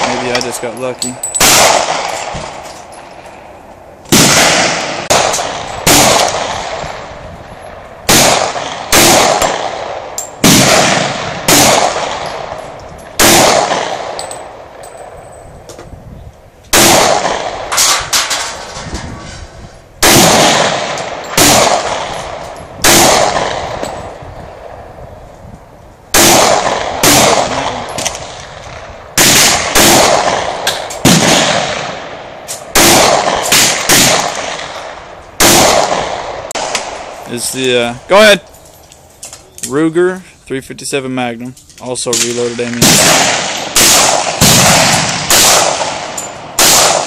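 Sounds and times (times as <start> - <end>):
pistol shots with ringing echo: 0.0 - 2.7, 4.1 - 15.2, 16.7 - 18.6, 20.0 - 24.8, 26.1 - 37.2, 42.2 - 47.0.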